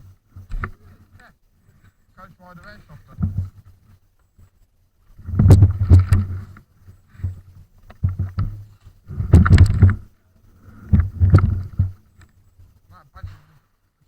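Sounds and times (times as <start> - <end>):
microphone buffeting and rustle: 0.0 - 14.0.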